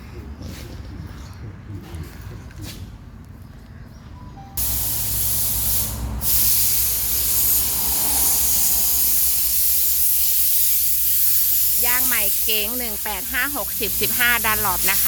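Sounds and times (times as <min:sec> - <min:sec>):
loud steady hiss: 0:04.6 - 0:15.0.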